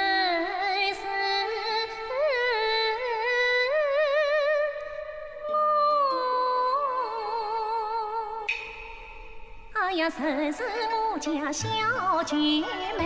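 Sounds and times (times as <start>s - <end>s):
woman singing opera: 0.0s - 8.5s, 9.8s - 13.0s.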